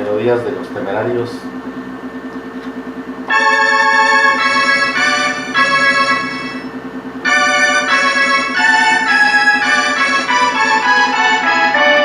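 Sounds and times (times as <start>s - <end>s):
synthesizer playing organ-like melody: 3.2s - 12.0s.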